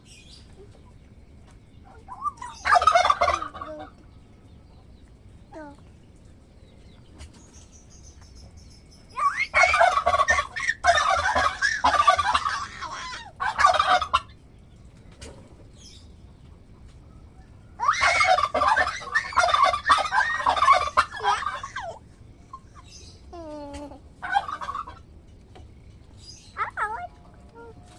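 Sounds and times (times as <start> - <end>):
turkey gobbling: 1.8 - 4.1, 9.2 - 14.4, 17.3 - 23.1, 23.9 - 25.1.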